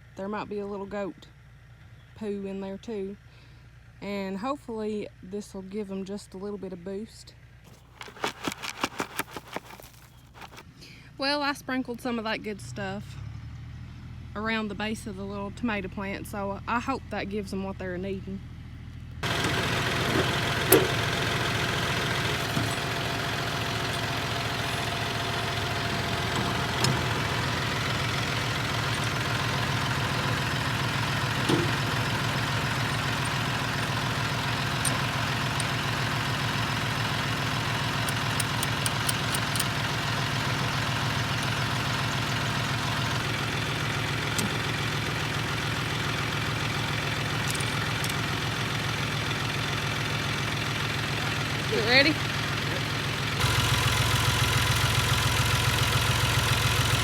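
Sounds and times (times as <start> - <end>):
tractor engine idling: 7.7 - 10.7, 19.2 - 57.0.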